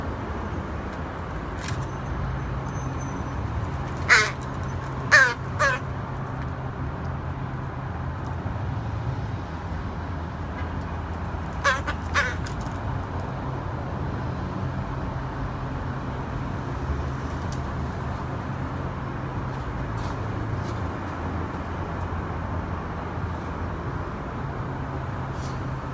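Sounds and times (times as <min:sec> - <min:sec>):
crows cawing: 0:03.9 - 0:06.0, 0:11.5 - 0:12.6.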